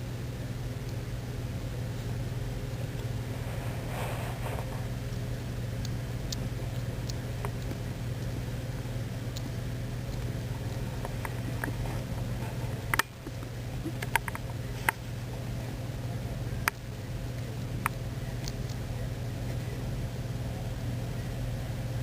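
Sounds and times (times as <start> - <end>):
steady low hum: 0.0 - 22.0
hedgehog clicks and taps: 9.3 - 15.0.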